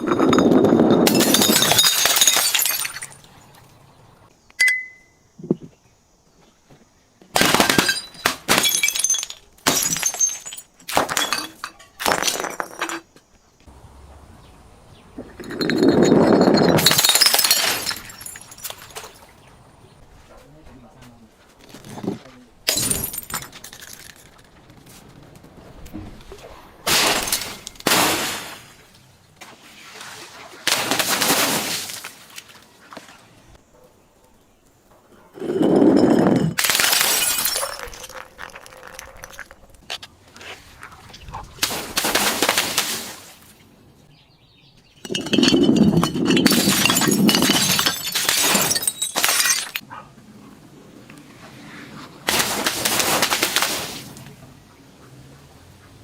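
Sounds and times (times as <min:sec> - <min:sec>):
glass smashing: 0:00.0 - 0:03.6, 0:07.4 - 0:12.9, 0:15.4 - 0:19.3, 0:22.7 - 0:24.3, 0:26.9 - 0:28.8, 0:35.4 - 0:39.6, 0:45.0 - 0:49.8
glass breaking and crunching: 0:00.1 - 0:03.7, 0:07.4 - 0:13.0, 0:15.4 - 0:19.3, 0:22.7 - 0:24.5, 0:26.9 - 0:28.9, 0:35.6 - 0:39.8, 0:45.0 - 0:49.8.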